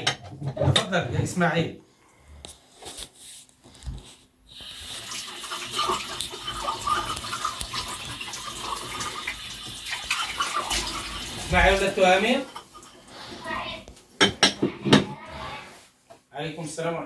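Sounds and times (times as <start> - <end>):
dishes and cutlery clinking: 0.0 - 1.3, 10.5 - 13.6, 14.2 - 15.2
tap running into a sink: 4.6 - 12.7.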